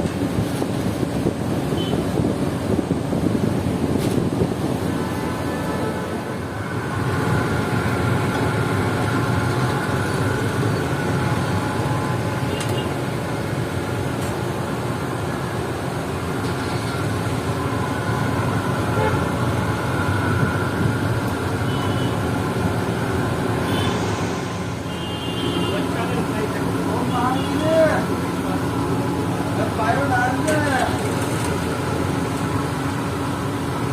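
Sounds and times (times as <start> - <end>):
vehicle engines running: 0.0 - 33.9
short horn toots: 23.6 - 25.9.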